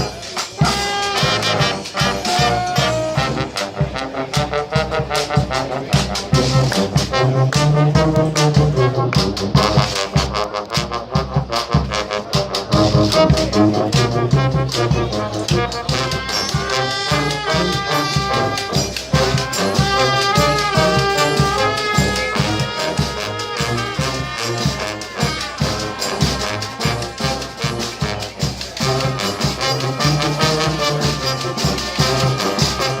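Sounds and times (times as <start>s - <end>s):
steady drum beat: 0.0s - 33.0s
trumpets and trombones: 0.0s - 33.0s.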